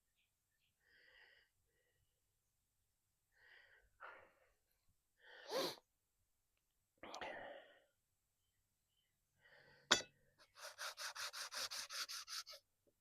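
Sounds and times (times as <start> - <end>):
person breathing: 0.8 - 2.1, 3.3 - 5.9, 7.2 - 8.0, 9.4 - 11.7.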